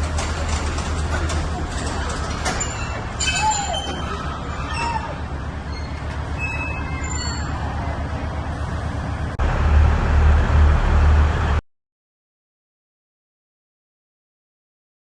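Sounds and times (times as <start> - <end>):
brief high squeaks: 2.6 - 7.7.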